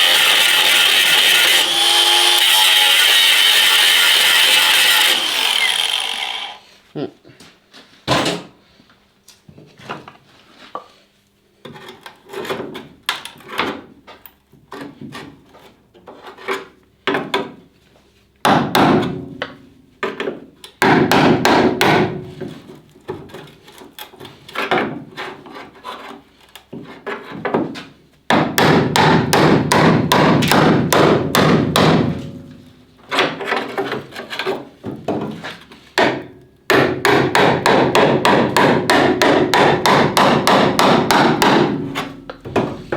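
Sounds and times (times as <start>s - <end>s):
hammer on sheet steel: 28.3s - 32.6s, 36.0s - 42.8s.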